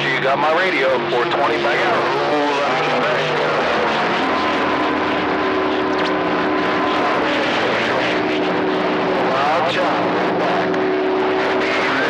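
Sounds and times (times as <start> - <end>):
radio static hiss: 11.4 - 12.0.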